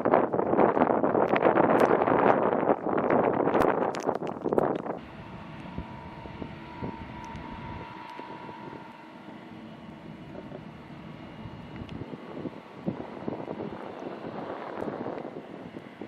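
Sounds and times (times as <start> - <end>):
wind buffeting microphone: 0.0 - 16.0
distant jet engines whining: 5.0 - 16.0
storm hiss: 5.0 - 16.0.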